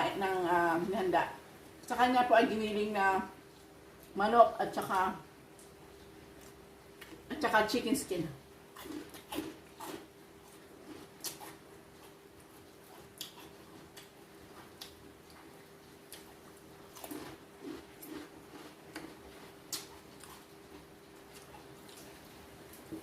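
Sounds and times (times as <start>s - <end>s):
faint steady hum: 0.0s - 23.0s
people chewing and smacking: 8.7s - 23.0s.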